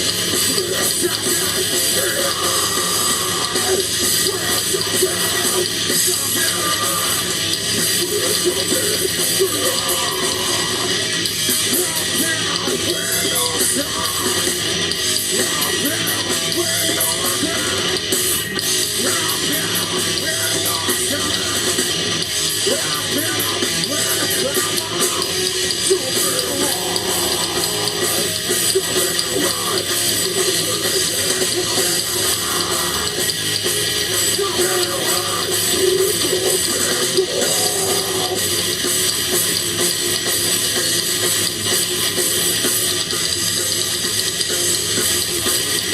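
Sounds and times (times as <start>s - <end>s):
drum kit: 0.0s - 45.9s
electric guitar: 0.0s - 45.9s.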